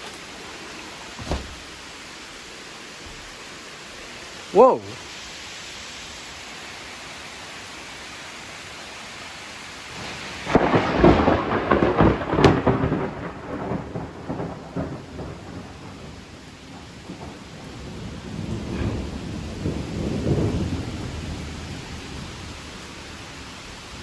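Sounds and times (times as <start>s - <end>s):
rain hissing: 0.0s - 24.0s
loud thunderclap rumbling: 9.8s - 24.0s.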